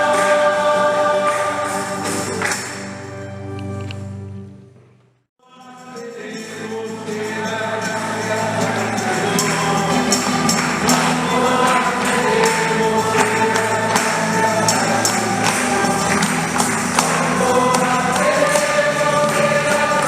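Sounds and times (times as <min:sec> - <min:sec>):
choir singing a hymn: 0:00.0 - 0:02.8, 0:05.4 - 0:20.0
tambourine jingling: 0:05.4 - 0:20.0.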